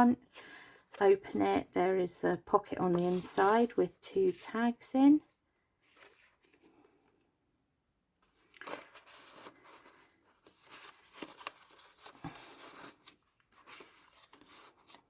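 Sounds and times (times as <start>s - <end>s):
paper and card rustling: 2.5s - 4.7s, 5.8s - 6.8s, 8.2s - 15.0s.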